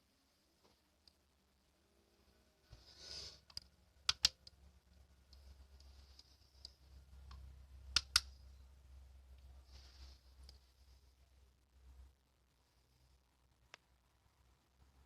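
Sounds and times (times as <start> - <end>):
low steady hum: 0.0 - 15.0
sharp clicks: 3.5 - 4.6, 6.6 - 8.3.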